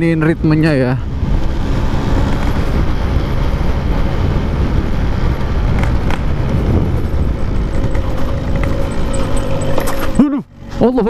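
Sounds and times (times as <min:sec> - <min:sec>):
motorcycle two-stroke engine running: 0:05.4 - 0:11.0.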